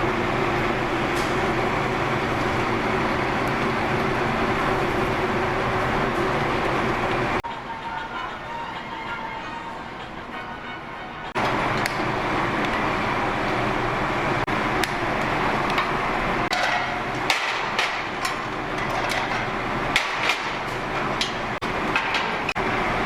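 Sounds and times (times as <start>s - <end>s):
kitchen work knocks and clicks: 15.7s - 22.6s.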